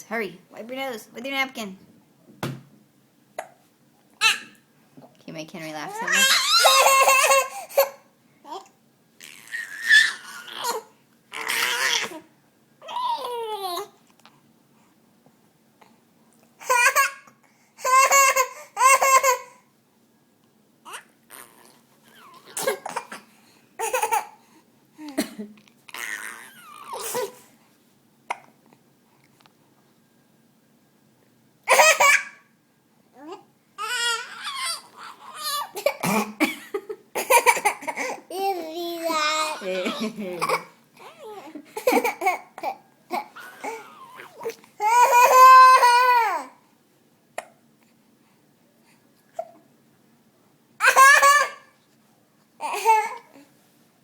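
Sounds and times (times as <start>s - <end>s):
child high-pitched squeal: 6.0s - 7.2s
child babbling: 38.3s - 41.6s.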